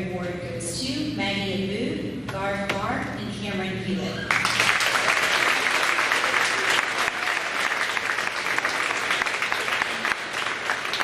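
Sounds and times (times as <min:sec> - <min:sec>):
audience applauding: 0:04.3 - 0:11.0.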